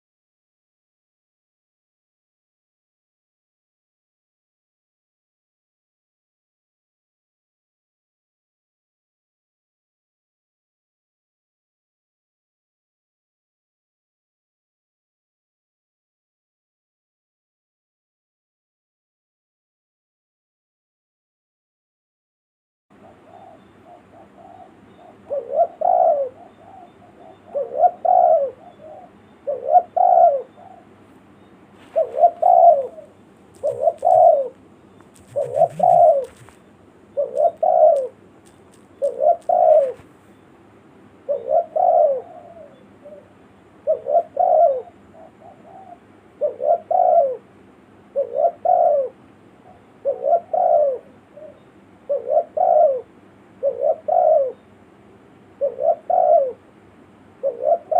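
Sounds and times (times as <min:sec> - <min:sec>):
dove cooing: 0:23.0 - 0:40.3, 0:41.2 - 0:54.7, 0:55.5 - 0:57.9.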